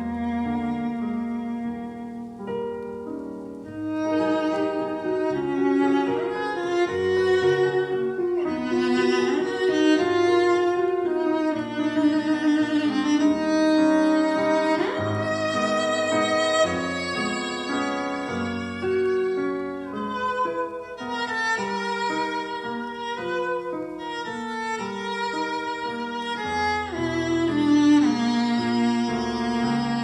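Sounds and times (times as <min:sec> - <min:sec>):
classical string music: 0:00.0 - 0:30.0.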